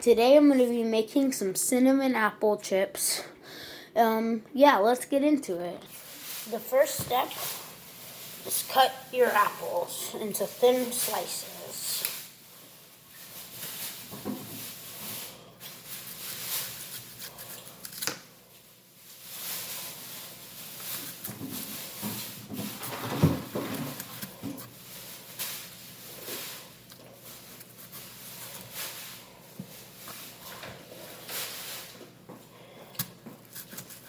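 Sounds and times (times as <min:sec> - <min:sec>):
knife slicing an apple: 0:16.7 - 0:18.3.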